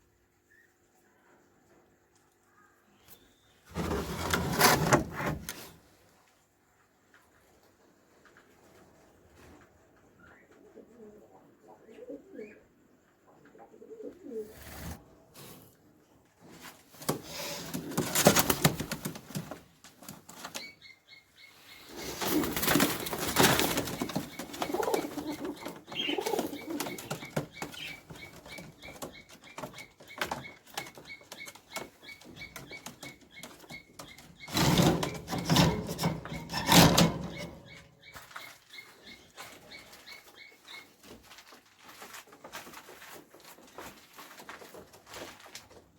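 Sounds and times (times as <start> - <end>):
pigeons cooing: 10.5 - 12.7, 13.5 - 14.6, 21.8 - 29.1
pigeons flapping wings: 17.1 - 20.6, 22.0 - 31.1.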